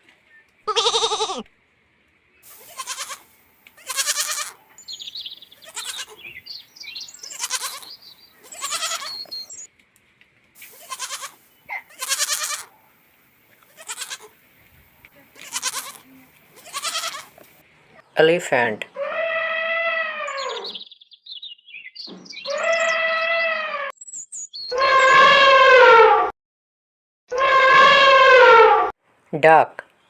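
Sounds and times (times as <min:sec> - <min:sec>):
baby goat bleating: 0:00.7 - 0:01.5, 0:02.6 - 0:03.2, 0:03.8 - 0:04.6, 0:05.6 - 0:06.3, 0:07.2 - 0:09.2, 0:10.8 - 0:12.7, 0:13.7 - 0:14.3, 0:15.3 - 0:17.4.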